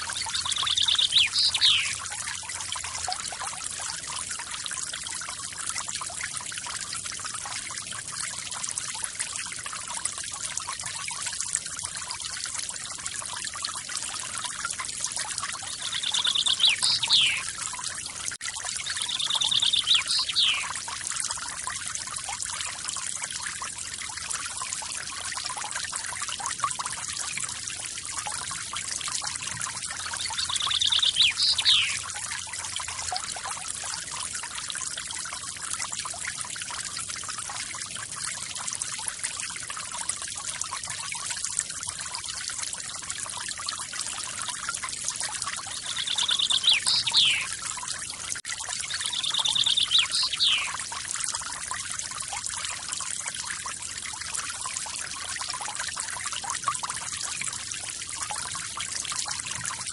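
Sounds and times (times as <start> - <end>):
songbird trilling: 0.1 - 2.0, 15.8 - 17.5, 18.8 - 20.7, 30.2 - 32.0, 45.8 - 47.5, 48.9 - 50.8.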